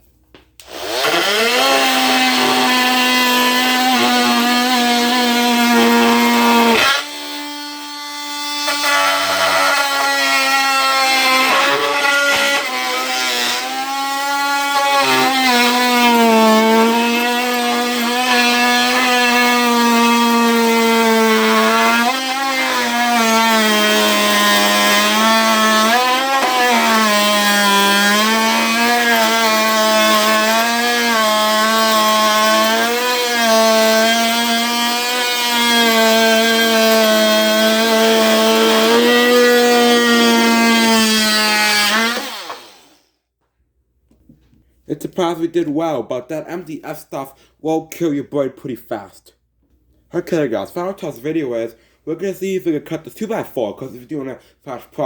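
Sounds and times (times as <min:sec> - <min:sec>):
oscillating multi-tool cutting wood: 0:00.6 - 0:43.0.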